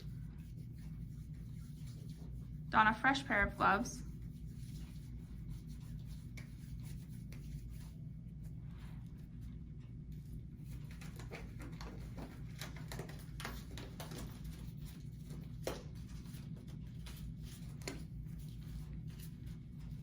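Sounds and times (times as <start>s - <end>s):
steady low hum: 0.0s - 20.0s
soft handling clicks and rustles: 4.2s - 20.0s.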